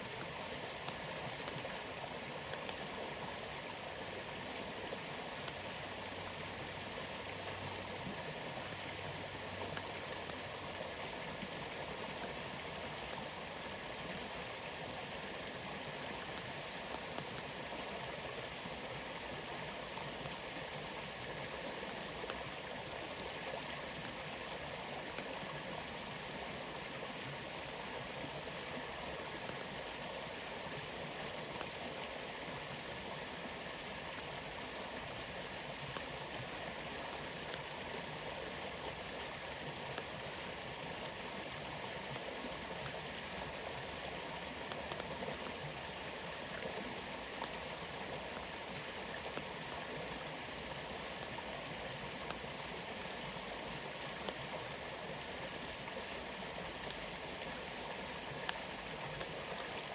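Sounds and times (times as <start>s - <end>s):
rain falling: 0.0s - 59.9s.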